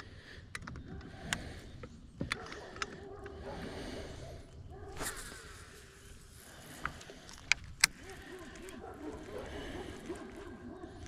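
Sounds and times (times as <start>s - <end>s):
sharp clicks: 0.0s - 3.4s, 5.0s - 11.0s.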